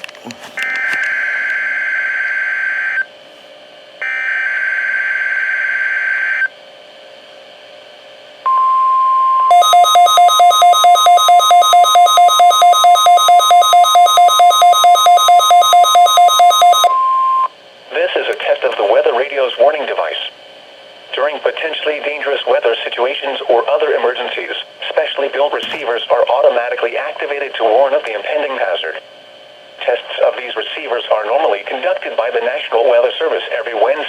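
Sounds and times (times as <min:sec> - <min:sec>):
steady alarm tone: 0:04.0 - 0:06.5, 0:08.5 - 0:17.5
rapid pulsing alarm beeps: 0:08.5 - 0:17.5
buzzing data bursts: 0:09.5 - 0:16.9.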